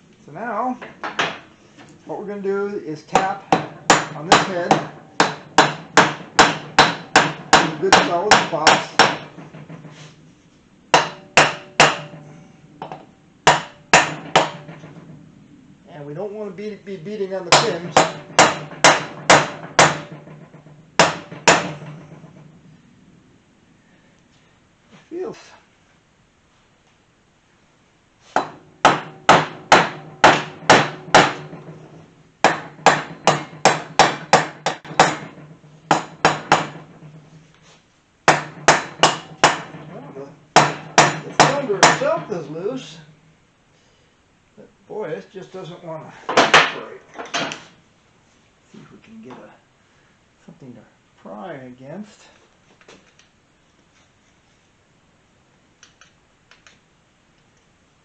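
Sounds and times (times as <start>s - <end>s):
hammer striking metal engine: 3.1s - 9.9s, 10.9s - 15.2s, 17.5s - 22.5s, 28.4s - 37.4s, 38.3s - 42.5s.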